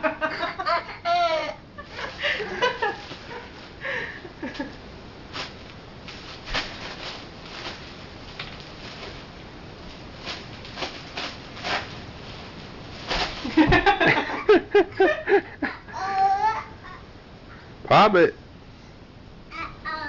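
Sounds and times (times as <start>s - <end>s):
bubble wrap crinkling: 1.9s - 3.8s, 4.4s - 13.8s
bubble wrap popping: 5.3s - 9.2s, 9.9s - 13.6s.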